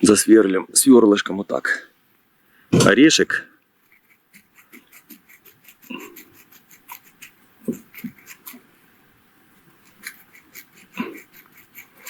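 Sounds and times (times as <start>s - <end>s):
fine drill bit scratching: 3.8s - 8.6s, 9.8s - 12.0s.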